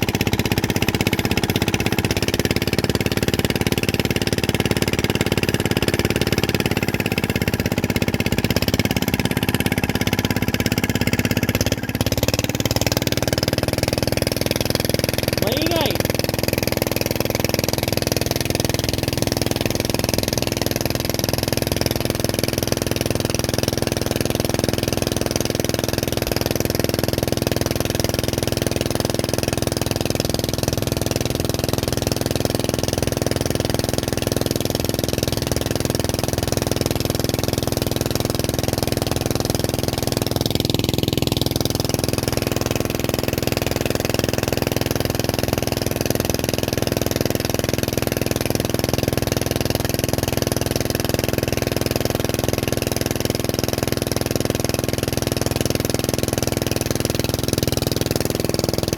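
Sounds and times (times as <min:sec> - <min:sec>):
small engine running steadily: 0:00.0 - 0:58.9.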